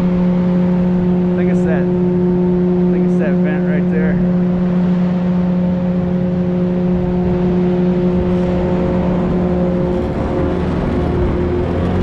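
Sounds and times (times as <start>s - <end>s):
industrial blower fan humming: 0.0s - 12.0s.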